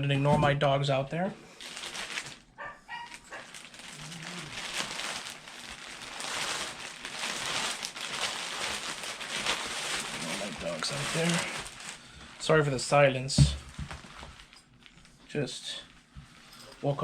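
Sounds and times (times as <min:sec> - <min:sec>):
plastic packaging crinkling: 0:01.5 - 0:17.0
dogs barking: 0:02.6 - 0:03.6.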